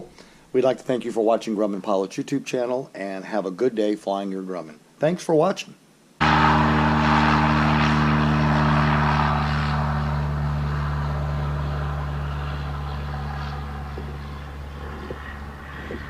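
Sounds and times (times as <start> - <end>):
light aircraft engine and propeller: 6.2 - 16.0.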